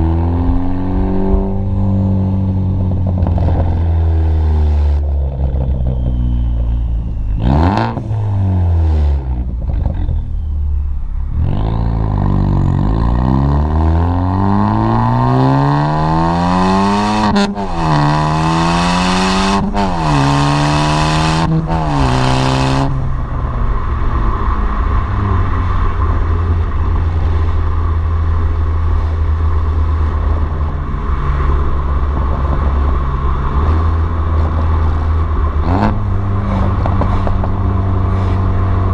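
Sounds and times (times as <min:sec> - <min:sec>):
car engine revving: 0:00.0 - 0:38.9.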